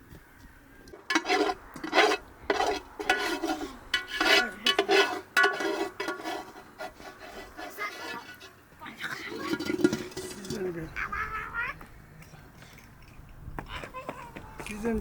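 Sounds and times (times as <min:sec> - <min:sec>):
metal utensil scraping pot: 0:00.9 - 0:10.9.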